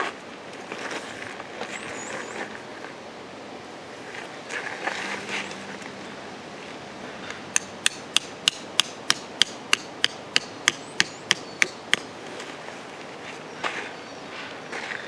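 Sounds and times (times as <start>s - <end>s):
hammer striking metal: 7.6s - 12.0s.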